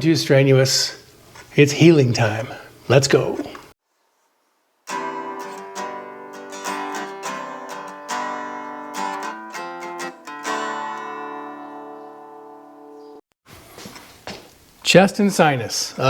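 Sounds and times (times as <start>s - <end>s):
acoustic guitar music: 4.9s - 13.2s.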